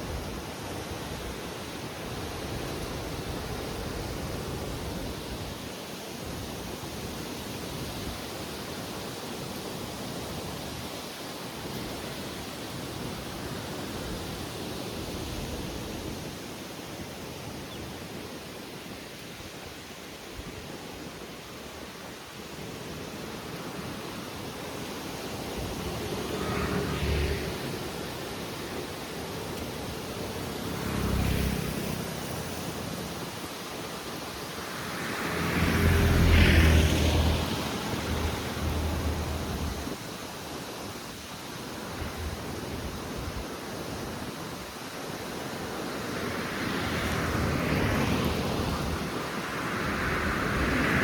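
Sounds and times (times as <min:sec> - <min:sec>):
strong wind blowing: 0:45.2 - 0:51.0.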